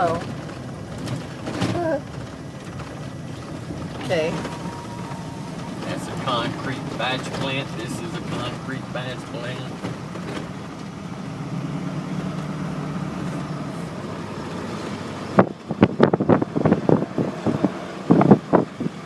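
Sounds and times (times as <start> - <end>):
car jolting knocks and thumps: 0.0 - 11.0
car road and engine noise: 0.0 - 19.0.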